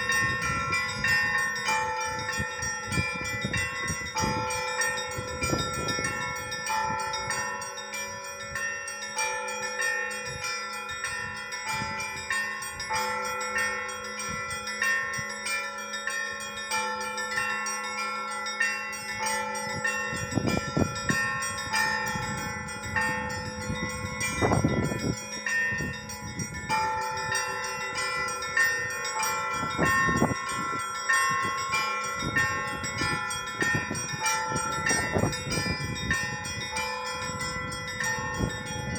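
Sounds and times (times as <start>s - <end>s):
small church bells ringing: 0.0s - 38.9s.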